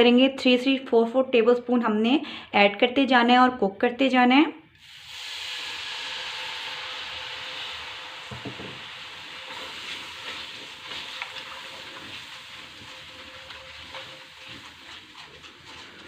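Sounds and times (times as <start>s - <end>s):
flour sizzling in ghee: 4.8s - 16.0s
spoon scraping and clicking: 12.8s - 16.0s.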